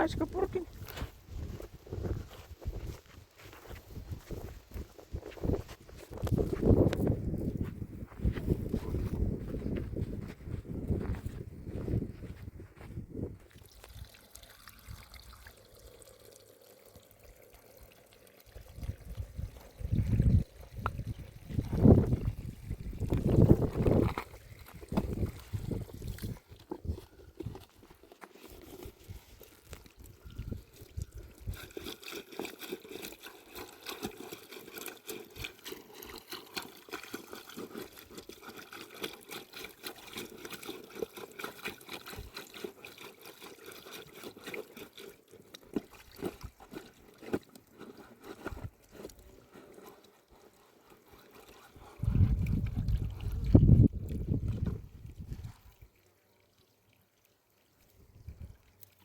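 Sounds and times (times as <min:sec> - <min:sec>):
water trickling and splashing: 0:00.0 - 0:59.0.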